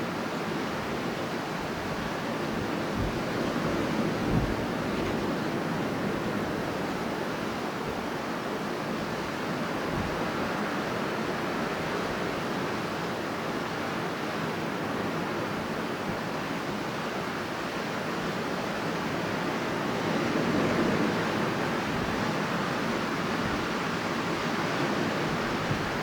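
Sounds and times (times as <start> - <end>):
strong wind blowing: 19.1 - 26.0.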